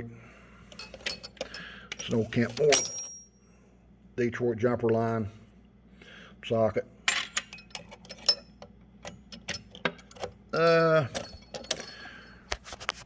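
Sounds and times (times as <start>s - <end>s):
metal tools clinking in drawer: 0.7s - 3.6s, 7.1s - 12.7s.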